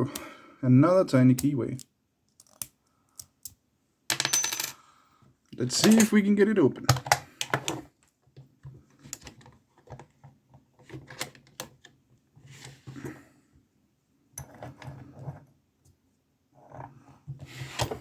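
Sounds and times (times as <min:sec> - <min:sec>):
lockpicking tools clicking: 0:01.4 - 0:03.6.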